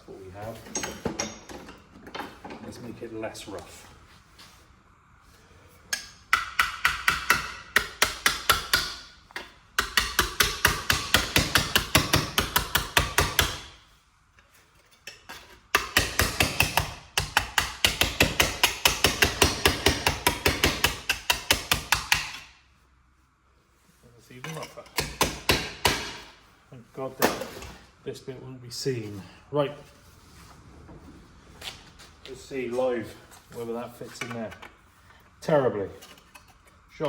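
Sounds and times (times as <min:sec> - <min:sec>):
hammer tapping sheet metal: 0:05.9 - 0:13.7, 0:15.8 - 0:22.5.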